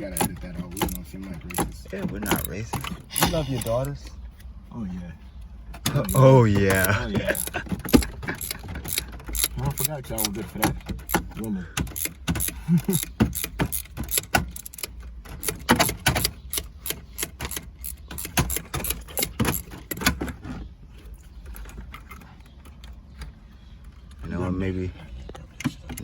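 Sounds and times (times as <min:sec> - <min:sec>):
ratchet clicking on bolts: 0:00.0 - 0:03.9, 0:06.1 - 0:20.0.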